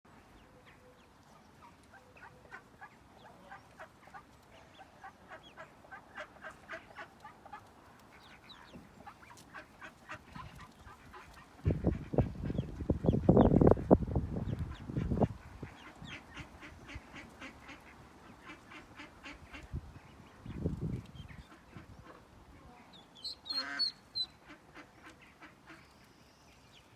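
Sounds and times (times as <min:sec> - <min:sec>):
ducklings peeping: 0:00.2 - 0:26.9
duck quacking loudly: 0:23.5 - 0:24.9.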